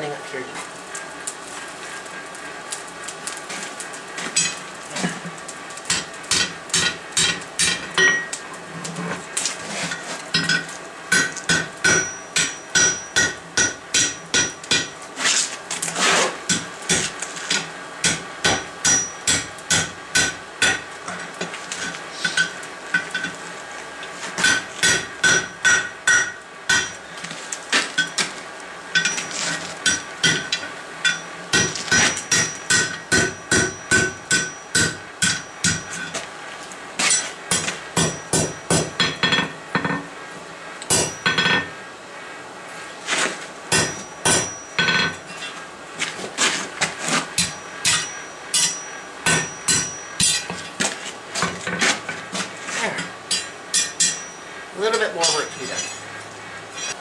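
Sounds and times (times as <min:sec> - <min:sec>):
hammer striking steel on anvil: 0:04.4 - 0:04.6, 0:05.9 - 0:08.4, 0:10.4 - 0:15.0, 0:18.0 - 0:23.4, 0:24.4 - 0:27.0, 0:29.0 - 0:36.2, 0:37.0 - 0:40.1, 0:40.9 - 0:41.7, 0:43.7 - 0:45.6, 0:47.4 - 0:50.7, 0:53.0 - 0:54.5, 0:55.1 - 0:56.1, 0:56.7 - 0:57.0
anvil ringing: 0:05.9 - 0:08.4, 0:10.4 - 0:14.9, 0:18.4 - 0:20.8, 0:24.4 - 0:27.0, 0:29.9 - 0:36.2, 0:37.0 - 0:39.6, 0:40.9 - 0:41.7, 0:43.7 - 0:45.5, 0:47.4 - 0:50.5, 0:53.0 - 0:54.5, 0:55.1 - 0:56.1, 0:56.7 - 0:57.0.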